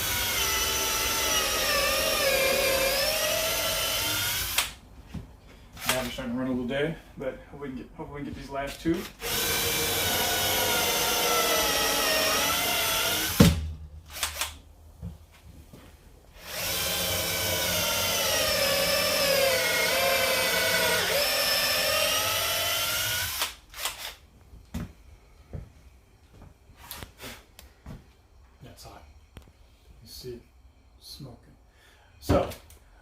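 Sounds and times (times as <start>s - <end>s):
power drill drilling into wood: 0.0s - 4.8s, 9.1s - 13.5s, 16.4s - 24.1s.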